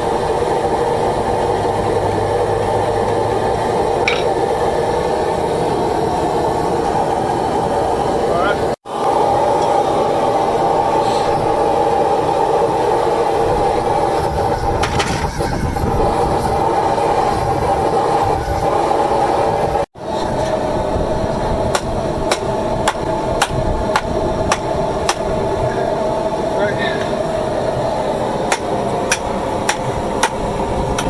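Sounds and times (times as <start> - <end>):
forge rushing noise: 0.0 - 31.0
hammer striking iron on anvil: 4.0 - 4.4, 21.7 - 25.3, 28.5 - 30.4.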